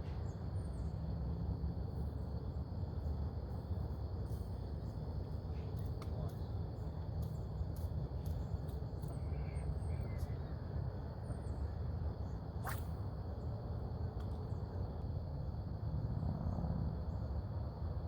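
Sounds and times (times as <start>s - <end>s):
insects droning: 0.0s - 18.0s.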